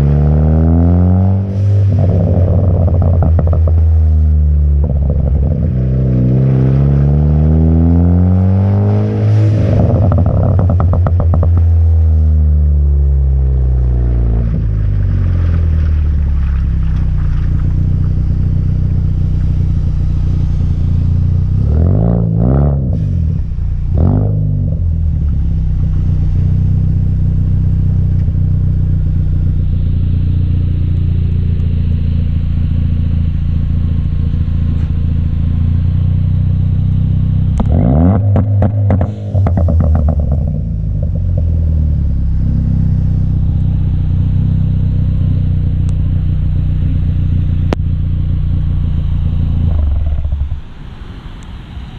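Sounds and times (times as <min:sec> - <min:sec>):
car engine cruising: 0:00.0 - 0:51.9
exhaust crackling pops: 0:01.3 - 0:07.3, 0:08.8 - 0:51.6.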